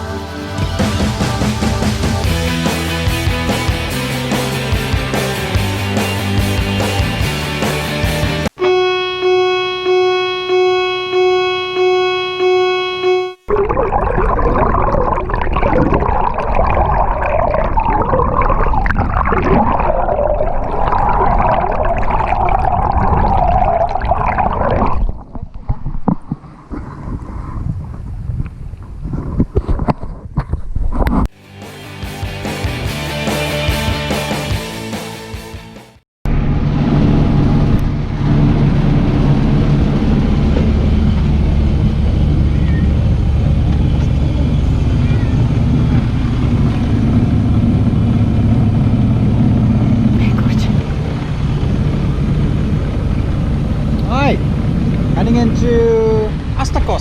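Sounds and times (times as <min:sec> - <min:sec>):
background music: 0:00.0 - 0:08.4, 0:31.4 - 0:36.0
boat engine drone: 0:08.4 - 0:24.8, 0:36.3 - 0:57.0
low rumble: 0:08.6 - 0:29.4, 0:36.3 - 0:57.0
water rushing and gurgling: 0:13.5 - 0:26.9.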